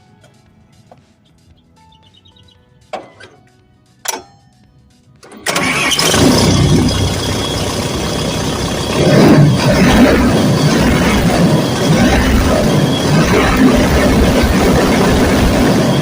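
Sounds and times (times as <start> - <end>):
excavator diesel engine running: 5.2 - 16.0.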